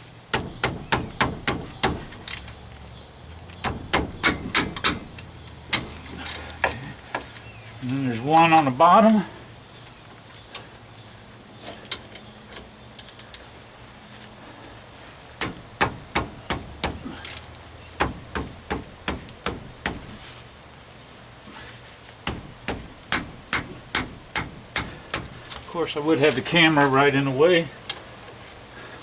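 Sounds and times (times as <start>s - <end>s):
sharp metallic knocks: 0.3s - 2.4s, 3.6s - 6.8s, 15.4s - 17.2s, 18.0s - 20.2s, 22.2s - 25.4s.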